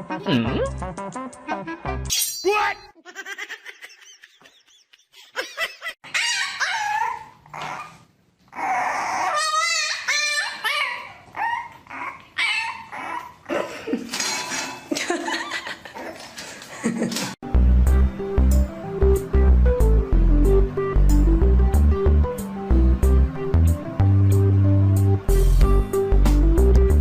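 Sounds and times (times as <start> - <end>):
dog whining and yipping: 6.0 - 13.4.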